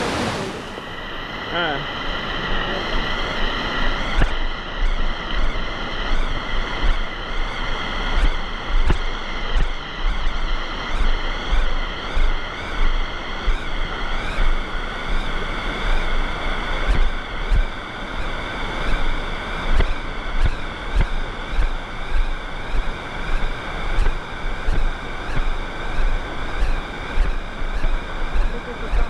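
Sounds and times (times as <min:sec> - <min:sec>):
rushing river water: 0:00.0 - 0:00.8.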